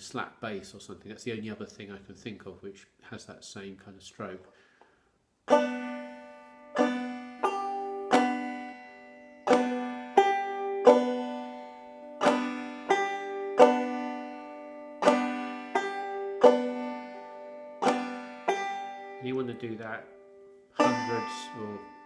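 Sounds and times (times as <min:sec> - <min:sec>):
banjo plucked clawhammer style: 0:05.4 - 0:22.0.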